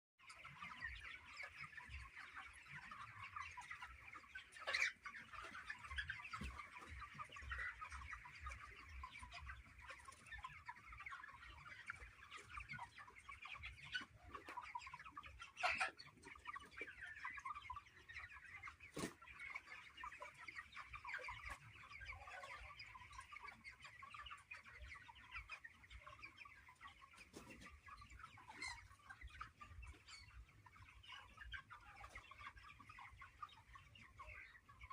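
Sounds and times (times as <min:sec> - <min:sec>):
flock of chickens calling: 0:00.2 - 0:34.9.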